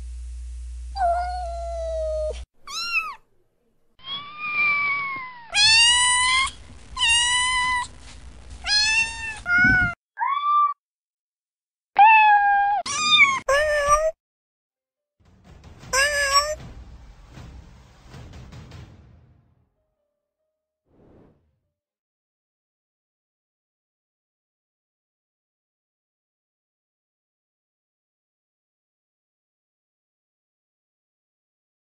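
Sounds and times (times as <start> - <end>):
cats meowing: 1.0 - 3.2, 4.0 - 7.9, 8.6 - 10.8, 12.0 - 14.1, 16.0 - 16.6.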